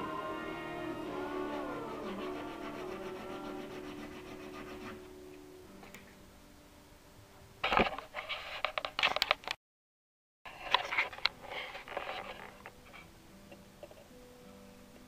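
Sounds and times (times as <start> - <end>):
sandpaper scraping wood: 1.3 - 5.1.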